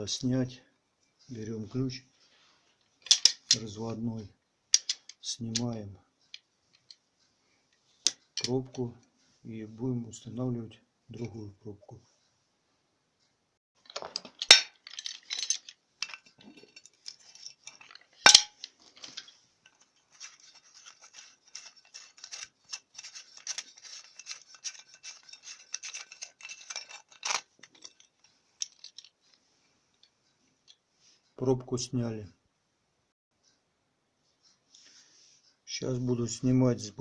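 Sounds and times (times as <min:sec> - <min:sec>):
wrench scraping clicks: 0:14.4 - 0:29.1.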